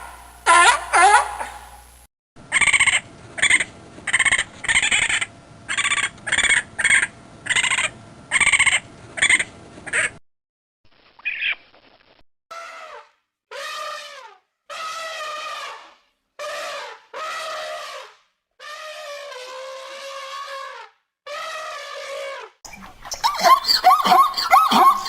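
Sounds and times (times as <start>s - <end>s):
animal calls falling in pitch: 0.4s - 1.8s.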